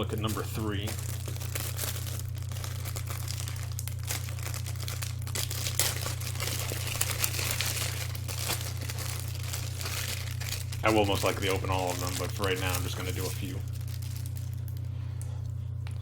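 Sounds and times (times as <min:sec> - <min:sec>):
low hum: 0:00.0 - 0:16.0
plastic packaging crinkling: 0:00.0 - 0:16.0.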